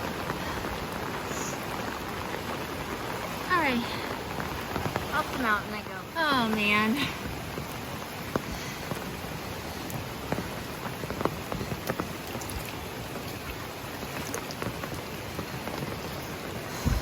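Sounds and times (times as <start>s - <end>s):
raindrops tapping: 0.0s - 17.0s
steady rain hiss: 0.0s - 17.0s.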